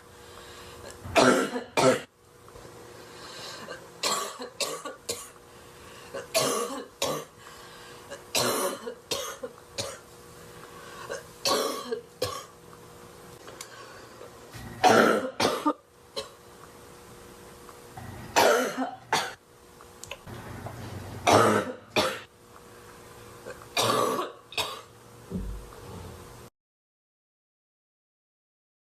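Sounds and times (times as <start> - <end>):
woman coughing harshly: 1.2 - 2.1, 3.6 - 5.4, 6.2 - 7.4, 8.1 - 10.0, 11.1 - 12.6, 14.8 - 16.4, 18.4 - 19.4, 21.3 - 22.3, 23.8 - 24.9.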